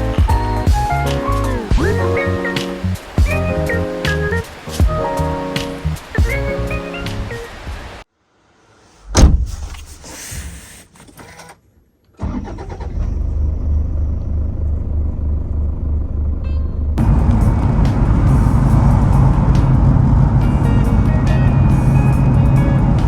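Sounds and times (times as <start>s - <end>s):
sharp knock: 9.1s - 10.0s
car engine starting and running: 12.2s - 22.9s.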